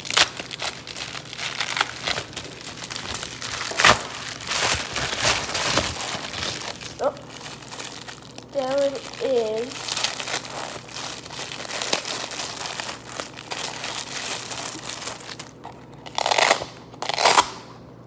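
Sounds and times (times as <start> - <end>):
packaging crinkling: 0.0 - 17.5.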